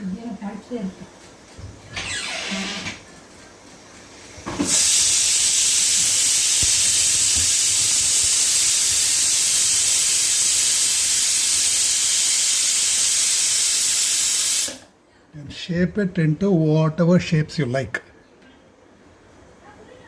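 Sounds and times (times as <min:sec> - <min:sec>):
steam hissing from pressure cooker: 0:02.0 - 0:02.9, 0:04.4 - 0:14.9.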